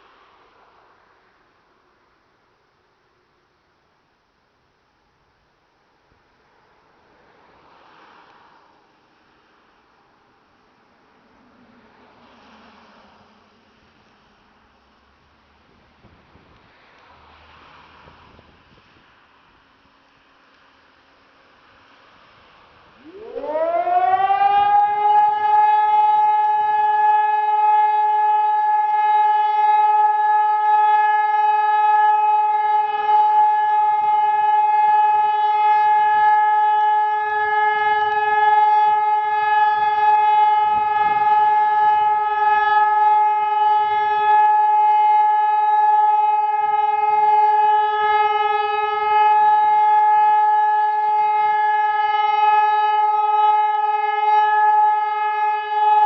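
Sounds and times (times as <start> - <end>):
steady warning siren tone: 22.0 - 56.0.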